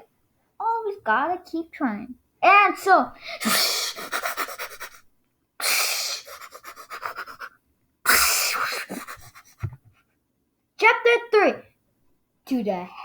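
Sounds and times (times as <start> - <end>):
person panting breathy bursts: 3.2 - 5.0, 5.6 - 9.8.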